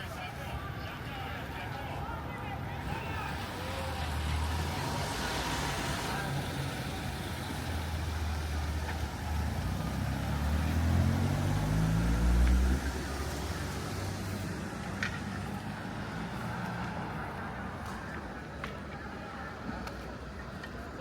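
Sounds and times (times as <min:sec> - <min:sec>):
vehicle engine accelerating: 0:02.9 - 0:18.2.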